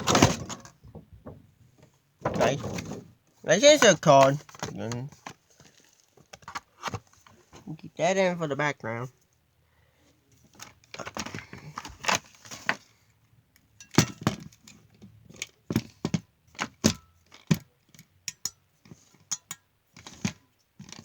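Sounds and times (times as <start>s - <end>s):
packaging crinkling: 5.5s - 6.9s.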